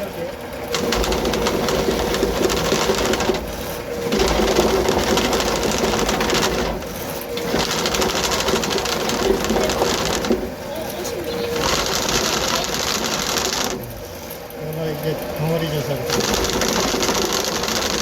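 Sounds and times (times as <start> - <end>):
drain cleaning machine motor hum: 0.0 - 18.0.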